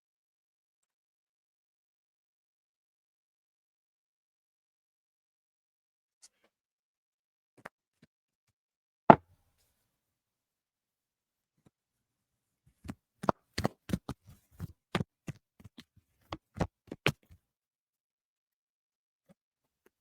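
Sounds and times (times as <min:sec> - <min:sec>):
cards slapping and tapping: 0:12.8 - 0:17.4.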